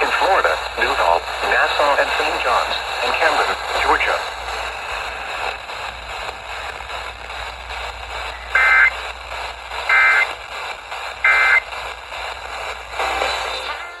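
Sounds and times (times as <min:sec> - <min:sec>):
radio hiss: 0:00.0 - 0:14.0
buzzing two-tone data bursts: 0:08.3 - 0:09.1, 0:09.8 - 0:10.4, 0:11.2 - 0:11.7.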